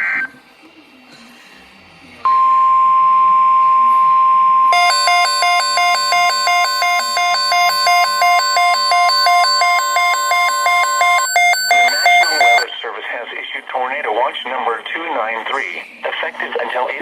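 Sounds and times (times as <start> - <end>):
steady weather radio alarm tone: 2.3 - 12.8
rapidly alternating beeping: 4.7 - 12.7.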